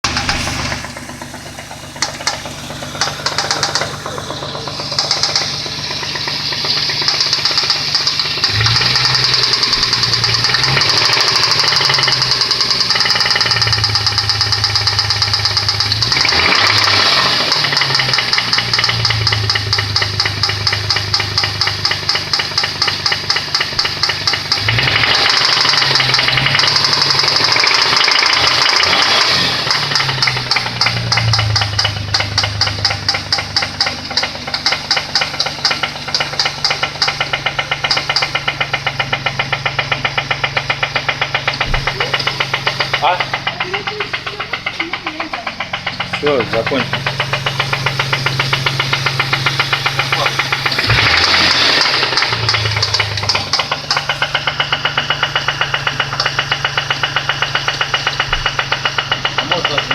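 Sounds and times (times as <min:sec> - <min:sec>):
car engine revving: 0:00.0 - 0:59.9
engine rod knock: 0:00.1 - 0:59.9.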